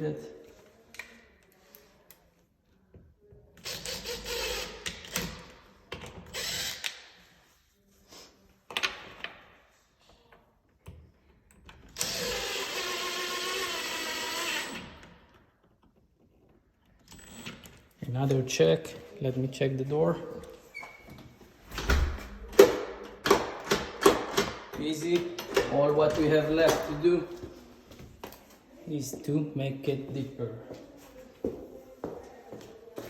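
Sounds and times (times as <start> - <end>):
power drill boring: 6.3 - 6.9, 12.0 - 15.0.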